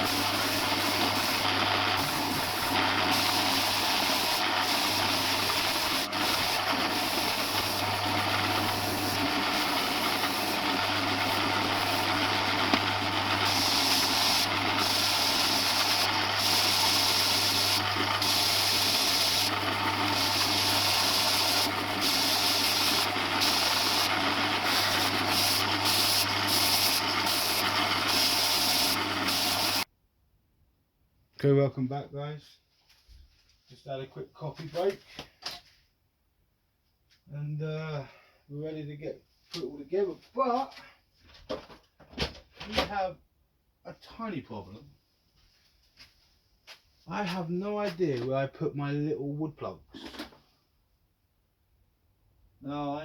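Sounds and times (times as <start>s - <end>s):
power sander grinding wood: 0.0s - 29.9s.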